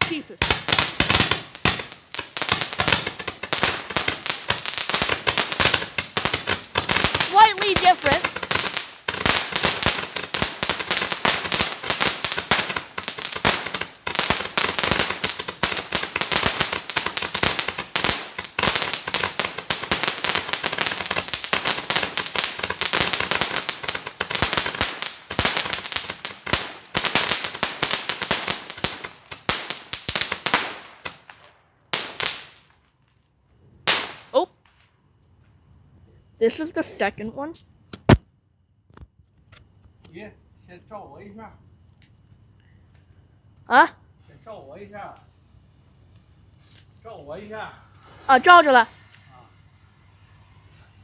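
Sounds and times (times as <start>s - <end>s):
firework cracks and bangs: 0.0s - 33.2s, 33.8s - 34.9s, 37.9s - 38.3s, 47.1s - 51.0s.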